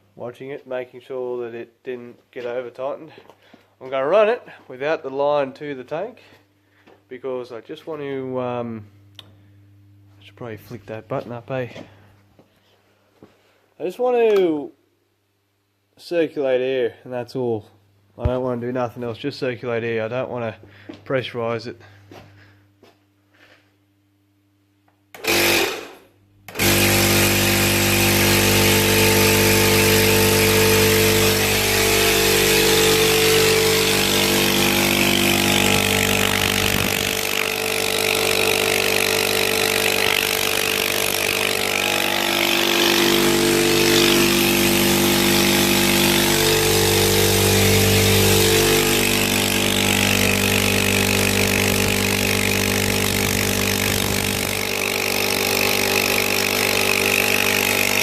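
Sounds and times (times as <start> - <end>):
air compressor running: 25.1 - 58.0.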